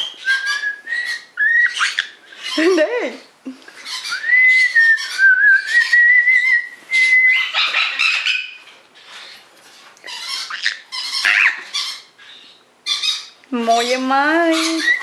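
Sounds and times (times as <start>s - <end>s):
parrot whistle: 0.0s - 2.2s, 3.9s - 8.6s
parrot squawks and chatter: 0.0s - 15.0s.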